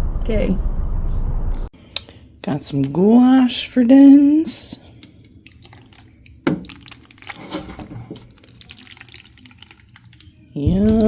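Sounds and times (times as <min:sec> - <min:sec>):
water dripping and splashing: 0:05.0 - 0:11.0.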